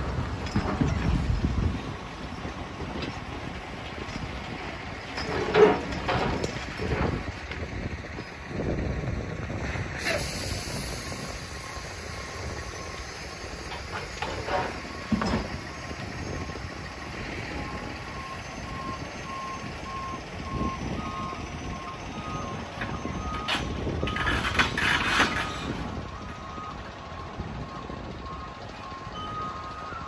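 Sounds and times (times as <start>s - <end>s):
diesel equipment rumble: 0.0s - 30.0s
reversing alarm beeping: 10.2s - 30.0s.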